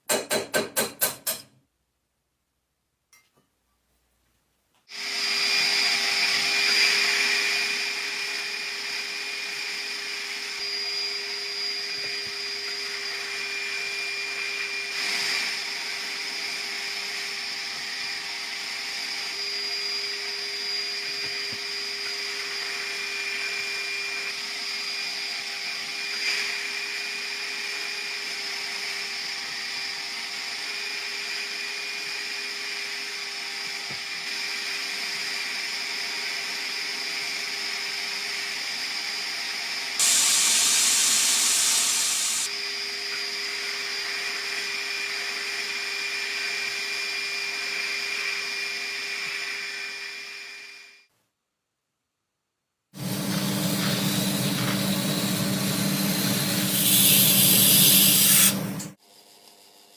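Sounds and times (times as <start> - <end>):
electric power tool whining: 4.9 - 51.0.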